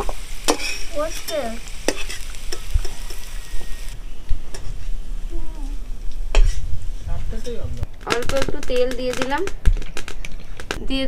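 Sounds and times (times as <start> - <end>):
metal spatula stirring: 0.0 - 3.6
vegetables sizzling in oil: 0.0 - 7.0.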